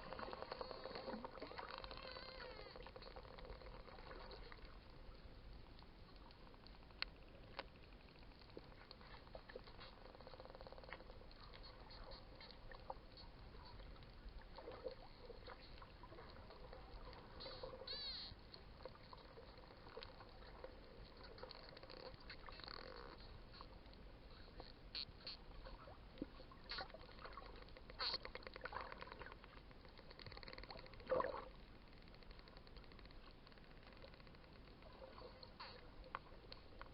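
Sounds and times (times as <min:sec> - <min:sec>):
faint underwater hiss: 0:00.0 - 0:36.9
dolphin squeaks and squeals: 0:00.6 - 0:02.8, 0:17.3 - 0:18.4
dolphin clicks: 0:14.6 - 0:23.8.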